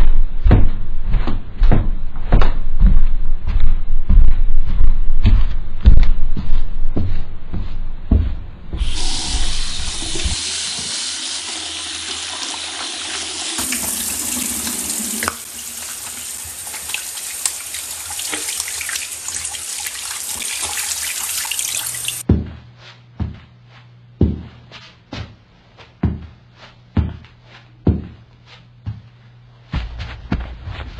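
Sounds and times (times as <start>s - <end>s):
water running: 8.8s - 22.2s.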